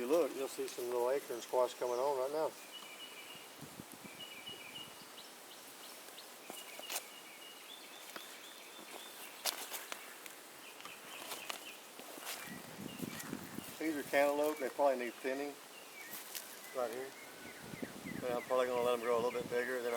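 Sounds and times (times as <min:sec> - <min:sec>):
high level bird or insect calls: 0:00.0 - 0:19.9
light rustling: 0:08.0 - 0:15.4, 0:16.0 - 0:17.2.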